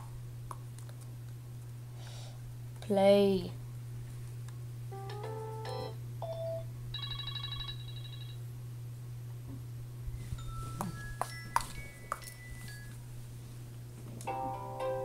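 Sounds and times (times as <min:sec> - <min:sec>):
steady low hum: 0:00.0 - 0:15.0
phone ringtone chimes: 0:05.6 - 0:08.4, 0:10.4 - 0:13.0.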